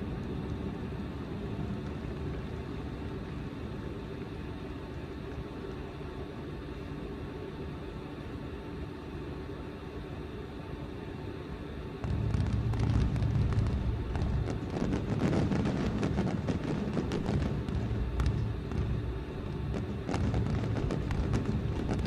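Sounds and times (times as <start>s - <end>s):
fireworks bursts with crackling pops: 12.0s - 22.0s
fireworks rumbling: 12.0s - 22.0s.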